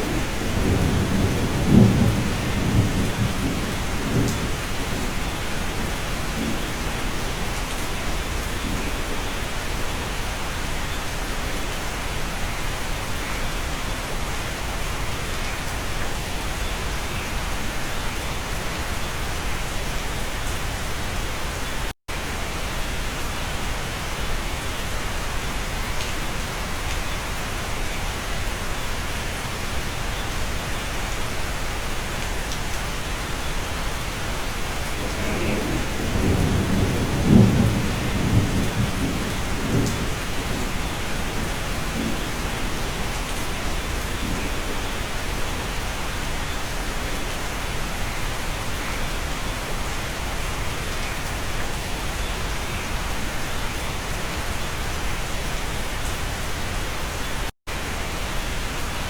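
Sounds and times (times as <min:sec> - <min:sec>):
thunder rumbling: 0:00.0 - 0:09.6, 0:34.6 - 0:46.8
steady rain falling: 0:00.0 - 0:59.0.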